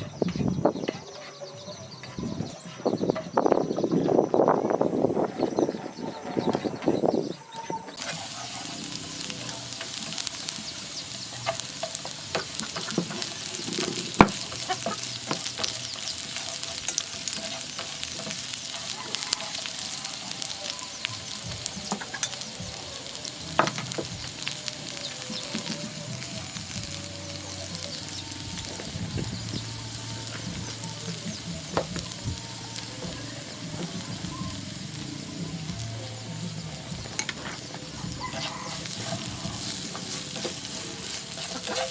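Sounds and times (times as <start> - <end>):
utensil scraping a pan: 8.0 - 20.0, 37.2 - 41.9
food sizzling in a pan: 8.0 - 41.9.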